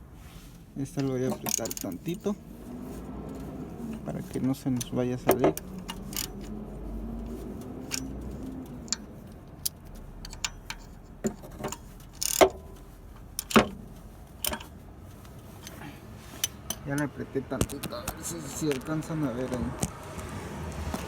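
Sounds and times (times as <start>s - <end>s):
wrench clicking on bolt: 1.0s - 2.0s, 4.8s - 6.6s, 7.8s - 13.8s, 14.4s - 14.8s.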